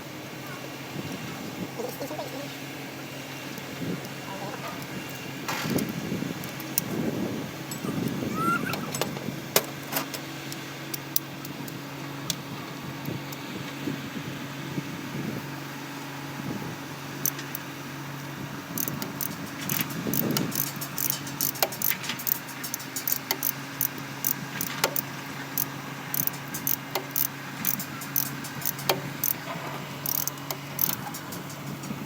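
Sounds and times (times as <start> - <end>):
low mechanical hum: 0.0 - 32.0
metal tools clinking: 7.7 - 8.2, 18.8 - 31.9.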